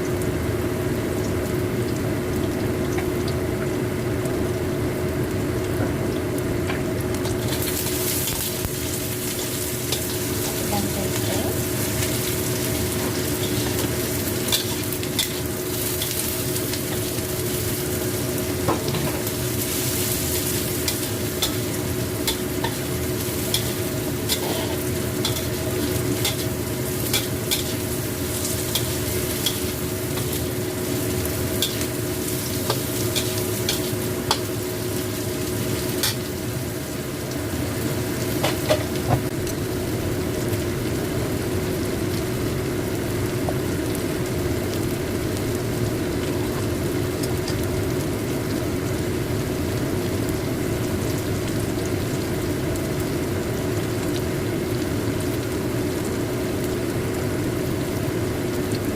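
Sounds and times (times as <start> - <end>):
food sizzling in hot oil: 0.0 - 58.9
spatula scraping pan: 23.5 - 26.4.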